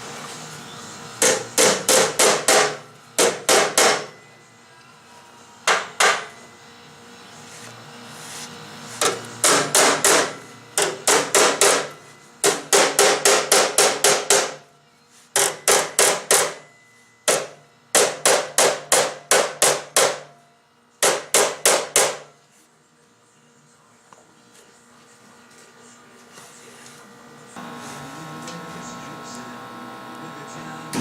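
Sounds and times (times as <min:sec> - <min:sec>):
hammer on sheet metal: 0:01.2 - 0:04.2, 0:05.7 - 0:06.3, 0:09.0 - 0:14.6, 0:15.4 - 0:20.4, 0:21.0 - 0:22.3.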